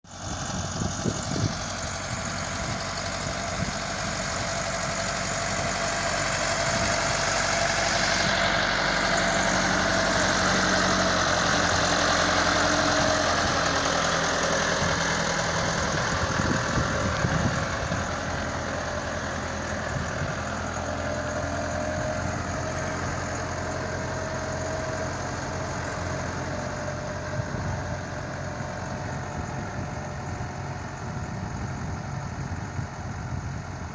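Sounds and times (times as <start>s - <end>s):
heavy machinery engine running: 0.1s - 33.9s.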